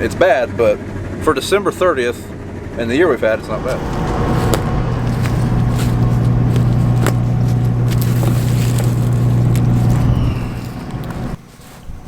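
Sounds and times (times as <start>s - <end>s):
combine harvester drone: 1.9s - 11.4s.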